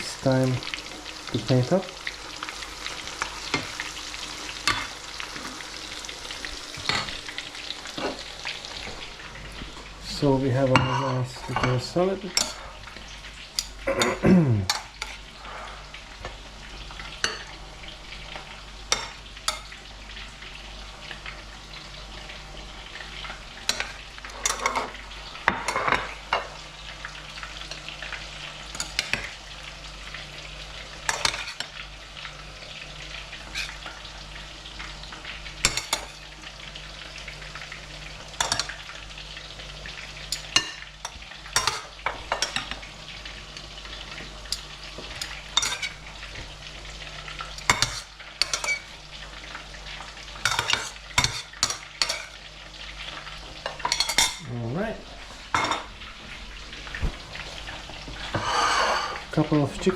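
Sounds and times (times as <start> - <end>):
food sizzling in hot oil: 0.0 - 59.9
utensils and dishes clinking: 10.6 - 12.8, 23.7 - 26.5, 28.7 - 29.3, 38.4 - 38.8, 40.2 - 42.8, 44.5 - 46.0, 47.6 - 48.9, 50.4 - 52.4, 53.6 - 54.5, 55.5 - 55.9.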